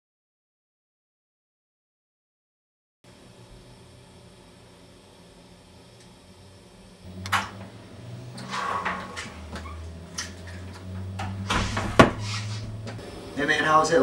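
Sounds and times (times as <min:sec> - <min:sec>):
low hum: 0:03.1 - 0:14.0.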